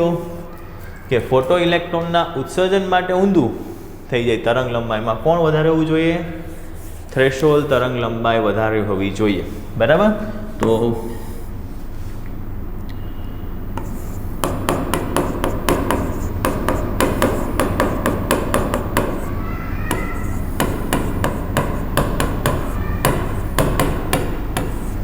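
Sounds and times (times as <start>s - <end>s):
steady low hum: 0.0s - 25.0s
sharp taps: 13.8s - 25.0s.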